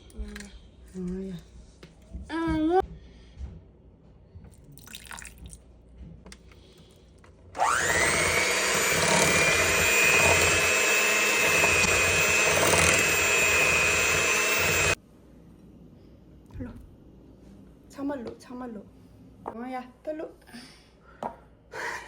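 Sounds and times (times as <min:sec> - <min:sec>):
electric mixer motor whining: 0:07.6 - 0:15.0.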